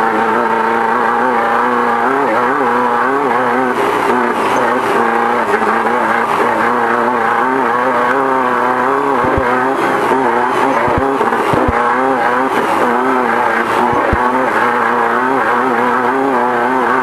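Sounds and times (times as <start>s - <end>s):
race car engine revving: 0.0s - 17.0s.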